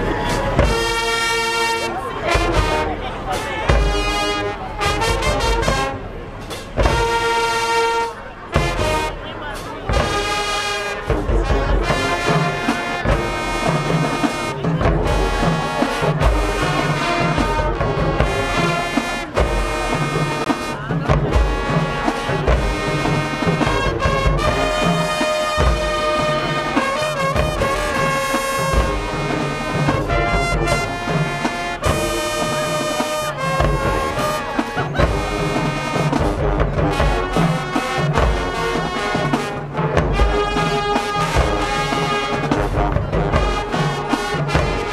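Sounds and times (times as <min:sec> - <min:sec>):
brass chords: 0:00.0 - 0:44.9.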